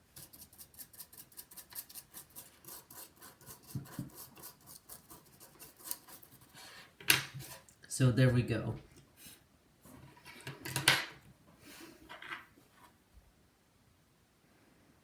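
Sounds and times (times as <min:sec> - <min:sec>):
toothbrush scrubbing: 0:00.0 - 0:06.6.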